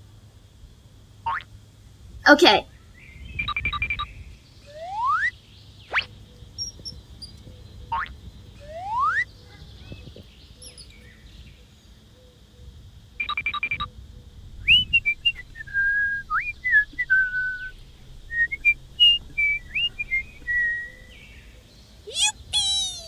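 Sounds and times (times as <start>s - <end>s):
whistled tune: 8.6s - 9.3s, 13.2s - 21.4s
rapid rattle: 14.0s - 21.6s.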